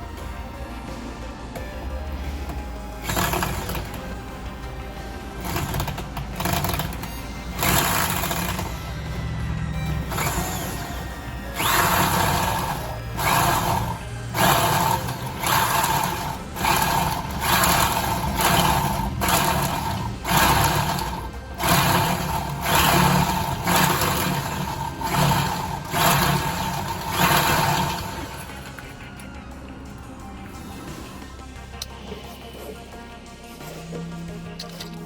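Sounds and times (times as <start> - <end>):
power drill whining bursts: 3.0 - 4.1, 5.3 - 29.2.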